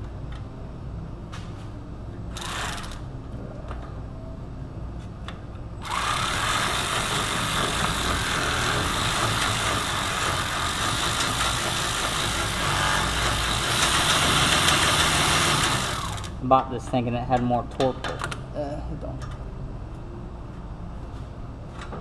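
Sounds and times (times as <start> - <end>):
impact wrench hammering: 5.9 - 16.3.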